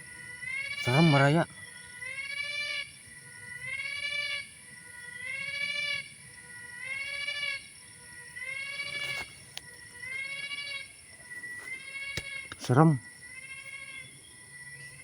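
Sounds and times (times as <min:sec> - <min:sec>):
animal wailing call: 0:00.8 - 0:01.5.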